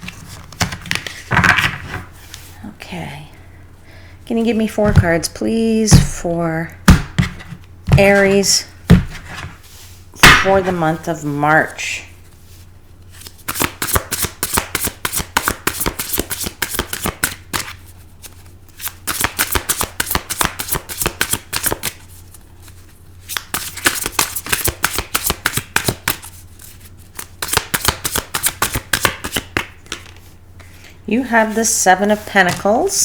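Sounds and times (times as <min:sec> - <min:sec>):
cards being shuffled: 0:00.0 - 0:02.5, 0:13.0 - 0:30.8.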